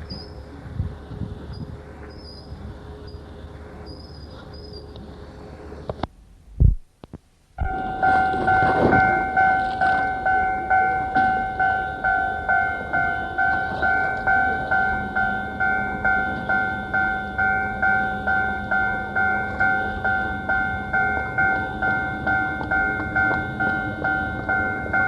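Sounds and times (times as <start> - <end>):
level crossing bell ringing: 7.7 - 25.0.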